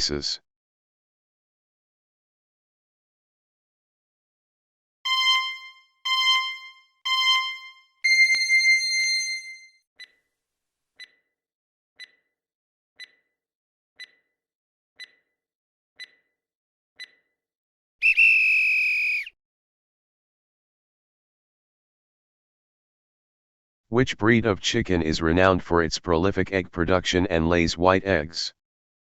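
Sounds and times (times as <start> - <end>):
soft ticks: 14.0 - 14.2, 15.0 - 15.2.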